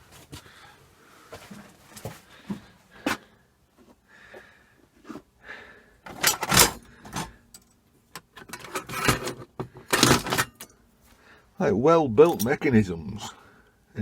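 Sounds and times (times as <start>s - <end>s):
clock parts clinking and clattering: 6.1s - 10.8s, 12.3s - 12.6s.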